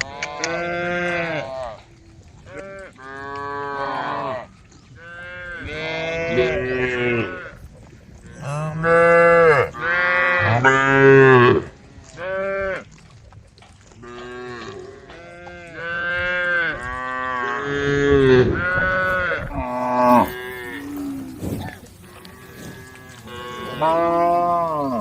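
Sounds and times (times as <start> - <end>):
cattle mooing: 5.0 - 7.6, 8.4 - 12.8, 14.0 - 25.0.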